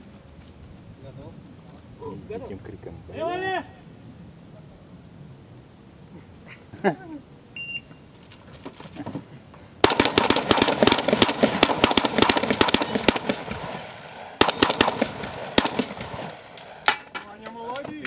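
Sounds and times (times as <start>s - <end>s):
short electronic beep: 7.6s - 8.0s
shotgun shots: 9.8s - 17.3s.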